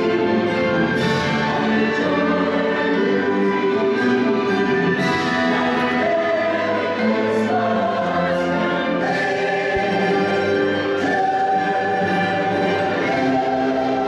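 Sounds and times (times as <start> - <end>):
choir singing: 0.0 - 14.0
orchestra playing held chords: 0.0 - 14.0.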